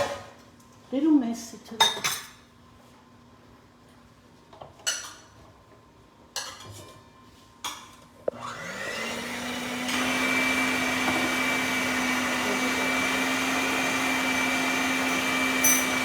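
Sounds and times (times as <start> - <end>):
electric mixer running: 8.3 - 16.0
kitchen utensils clinking: 10.0 - 16.0.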